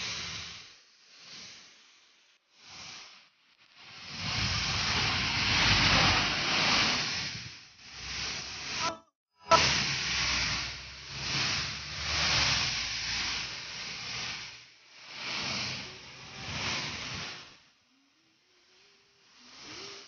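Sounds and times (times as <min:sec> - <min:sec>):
heavy rain hissing: 0:02.5 - 0:17.6.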